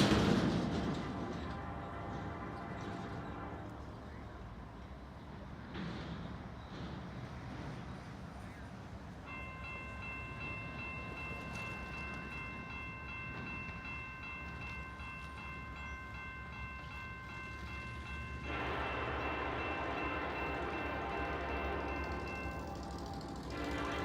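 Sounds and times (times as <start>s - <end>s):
train horn blowing: 1.0s - 4.5s, 18.3s - 24.0s
railroad crossing bell ringing: 9.2s - 24.0s.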